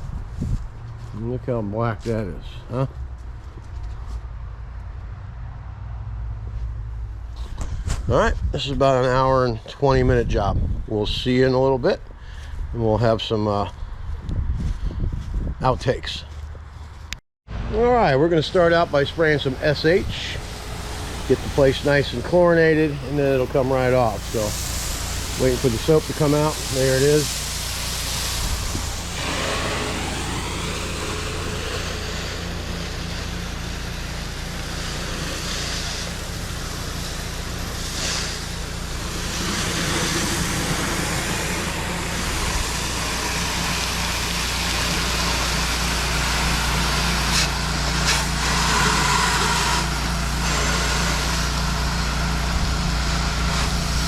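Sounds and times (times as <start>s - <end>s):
pressure washer engine running: 17.7s - 54.0s
spray wand hissing: 19.7s - 51.5s.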